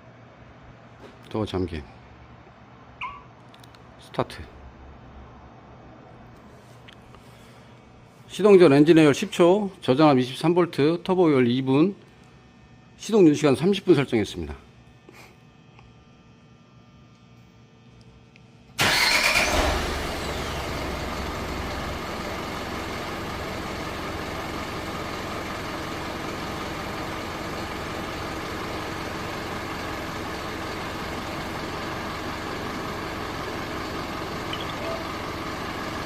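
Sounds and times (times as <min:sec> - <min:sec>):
diesel engine idling: 0:18.8 - 0:36.0
diesel truck engine starting: 0:18.8 - 0:36.0.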